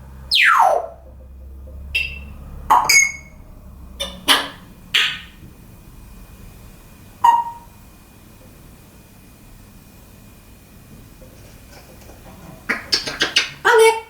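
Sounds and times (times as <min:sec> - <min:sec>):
parrot whistling and squawking: 0:00.3 - 0:01.0, 0:01.9 - 0:03.4, 0:04.0 - 0:05.4, 0:07.2 - 0:07.7, 0:12.7 - 0:14.0.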